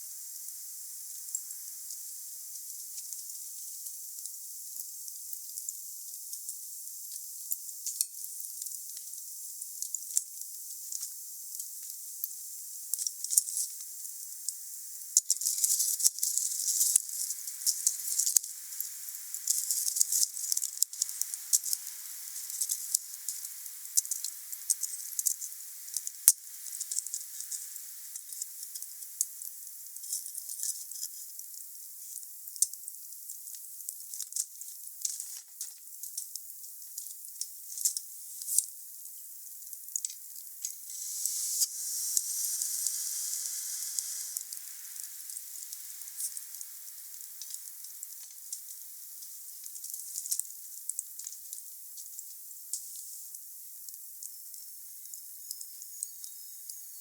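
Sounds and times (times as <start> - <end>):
wood fire crackling: 15.2 - 30.2, 40.6 - 50.4.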